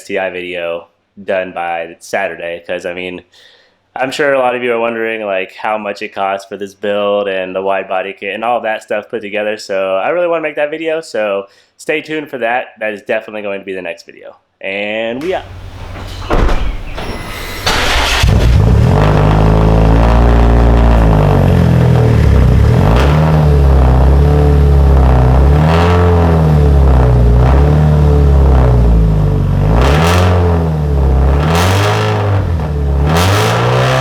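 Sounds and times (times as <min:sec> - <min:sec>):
car engine revving: 0:15.2 - 0:34.0.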